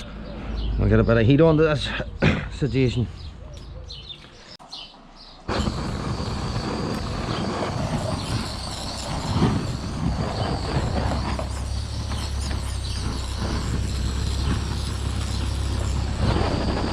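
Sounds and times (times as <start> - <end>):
blowtorch flame roaring: 5.5 - 16.9.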